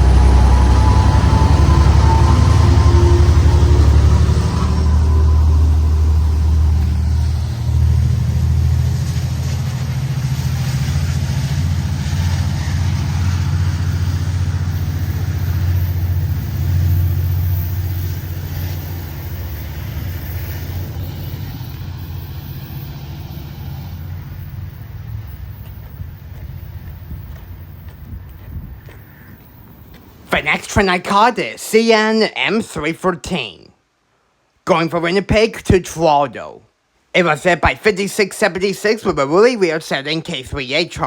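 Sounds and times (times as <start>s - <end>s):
freight train engine rumble: 0.0s - 32.7s.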